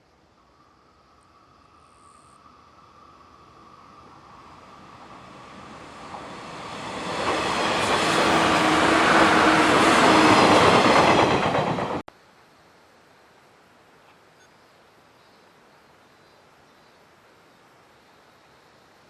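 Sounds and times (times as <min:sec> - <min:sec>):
train passing: 0:00.5 - 0:12.0.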